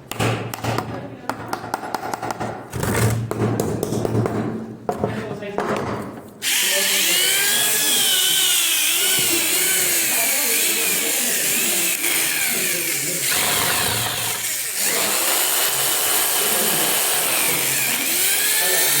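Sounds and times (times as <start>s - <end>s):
power drill whining: 6.4s - 19.0s.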